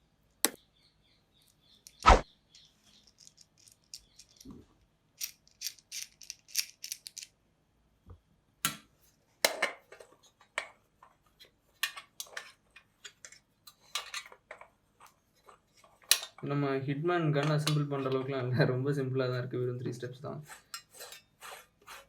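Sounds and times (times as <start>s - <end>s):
small hard parts clicking and rattling: 1.4s - 7.4s.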